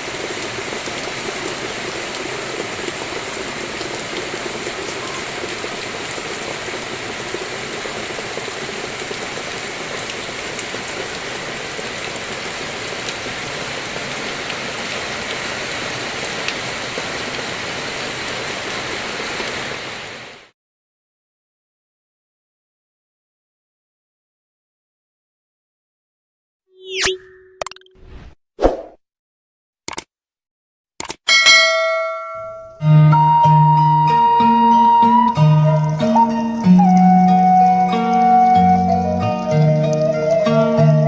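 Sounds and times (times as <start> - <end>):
raindrop ticks: 0.0 - 17.4
rain falling: 0.0 - 20.5, 33.0 - 41.0.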